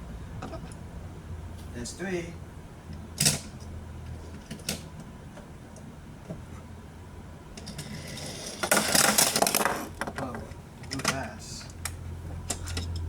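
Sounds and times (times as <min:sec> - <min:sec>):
toy car rattling along plastic track: 0:07.7 - 0:09.9.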